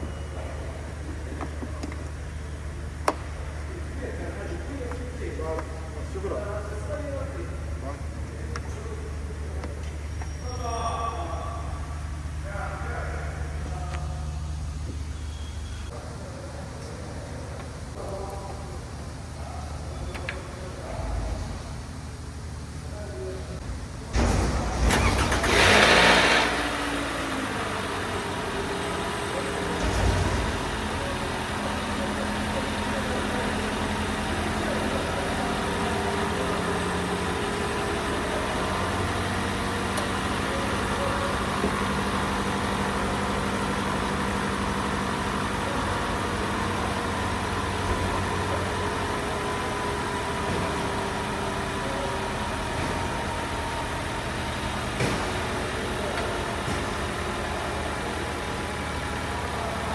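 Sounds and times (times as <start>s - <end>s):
car engine idling: 0.0s - 59.9s.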